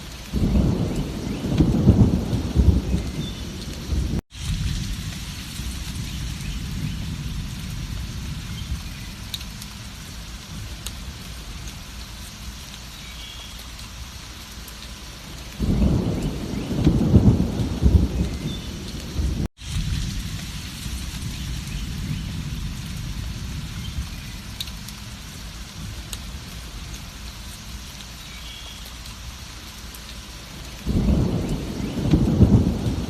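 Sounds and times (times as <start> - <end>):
heavy rain: 0.0 - 33.0
rolling thunder rumble: 0.3 - 11.7, 15.6 - 27.2, 30.5 - 33.0.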